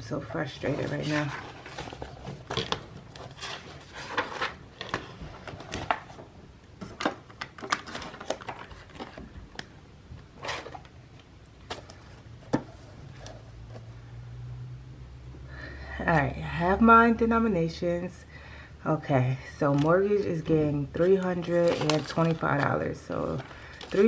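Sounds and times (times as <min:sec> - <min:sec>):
paper cash rustling: 0:00.6 - 0:06.2, 0:21.1 - 0:24.0.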